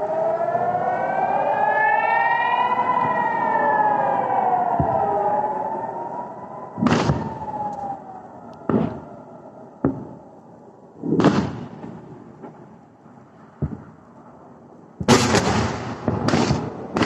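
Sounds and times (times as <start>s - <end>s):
air raid siren wailing: 0.0s - 11.1s
distant explosion booms with echo: 4.7s - 5.2s, 6.8s - 7.5s, 8.7s - 9.1s, 9.8s - 10.2s, 11.0s - 12.7s, 13.6s - 14.1s, 15.0s - 17.0s.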